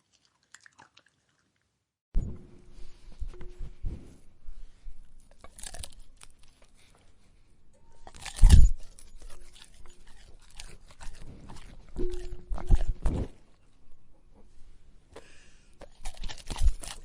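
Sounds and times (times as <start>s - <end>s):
dog crunching and chewing food: 5.0s - 7.0s, 8.0s - 13.5s, 15.8s - 17.0s.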